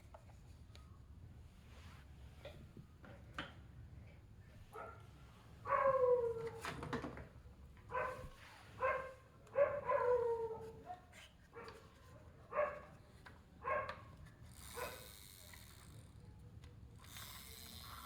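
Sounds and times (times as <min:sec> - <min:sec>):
dog barking: 0:05.7 - 0:06.3, 0:07.9 - 0:10.5, 0:12.5 - 0:12.9, 0:13.6 - 0:14.0, 0:14.8 - 0:15.0.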